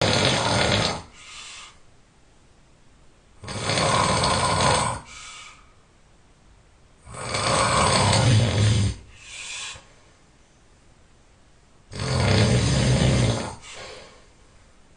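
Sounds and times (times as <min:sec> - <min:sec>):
person snoring loudly: 0:00.0 - 0:01.2, 0:03.4 - 0:05.1, 0:07.0 - 0:09.1, 0:11.9 - 0:13.6.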